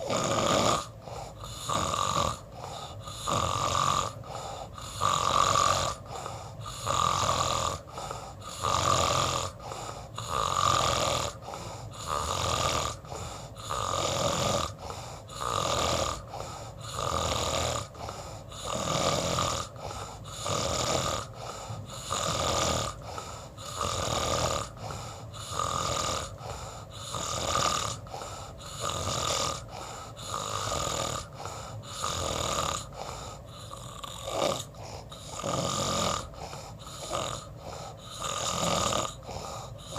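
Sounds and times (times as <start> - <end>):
rhythmic snoring: 0.0 - 39.9.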